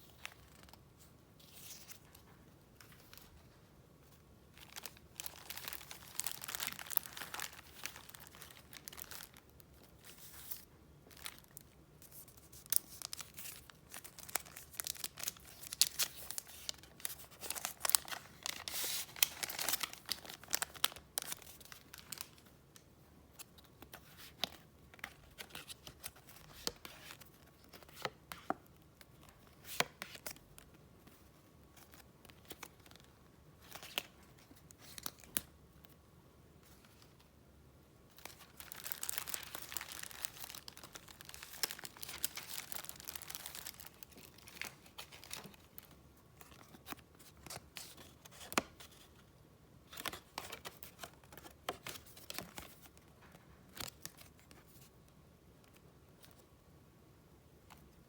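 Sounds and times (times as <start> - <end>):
paper rustling and crinkling: 0.0 - 22.5, 38.1 - 49.2.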